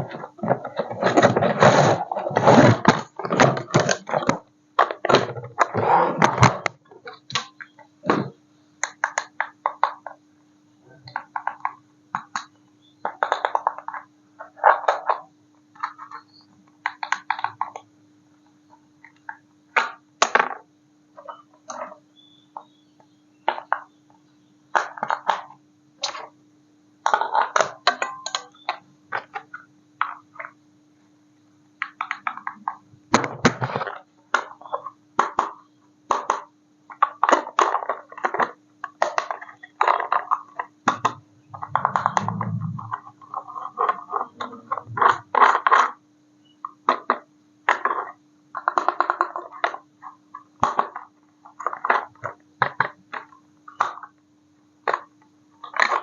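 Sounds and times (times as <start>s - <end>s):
low electrical hum: 0.0s - 56.0s.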